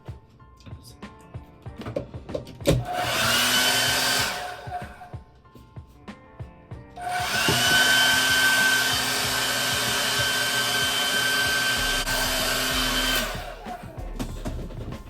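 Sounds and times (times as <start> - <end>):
hair dryer blowing: 2.7 - 5.2, 7.0 - 14.0.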